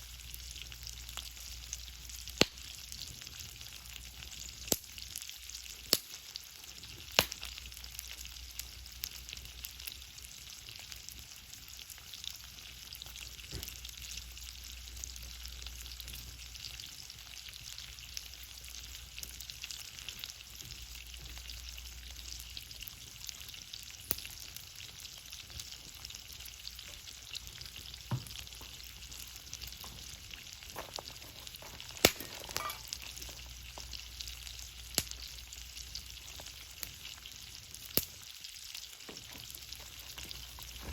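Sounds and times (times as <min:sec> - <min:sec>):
fire crackling: 0:00.0 - 0:40.9
sharp pops from fire: 0:02.4 - 0:02.8, 0:04.6 - 0:04.9, 0:05.8 - 0:06.2, 0:07.0 - 0:07.6, 0:30.9 - 0:33.9, 0:34.9 - 0:35.3, 0:37.9 - 0:38.2.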